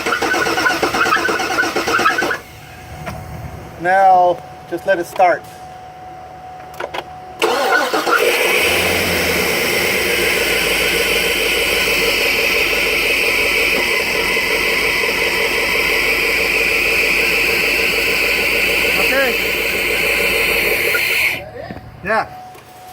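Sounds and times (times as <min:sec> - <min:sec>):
car engine starting and running: 0:00.0 - 0:03.8, 0:07.4 - 0:21.4
engine hiss: 0:00.0 - 0:03.8, 0:07.4 - 0:21.4.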